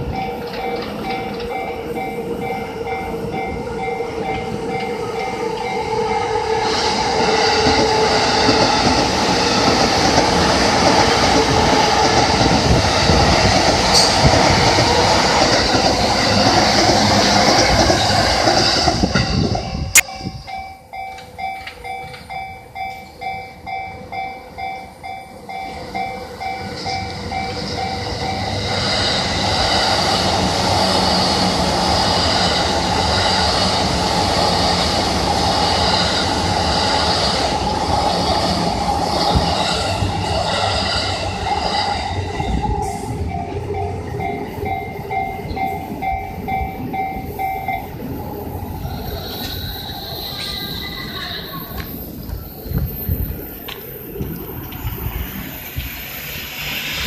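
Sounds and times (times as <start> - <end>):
level crossing warning bell: 0.0 - 6.6, 19.5 - 28.7, 41.4 - 48.1
electric train passing: 0.0 - 57.0.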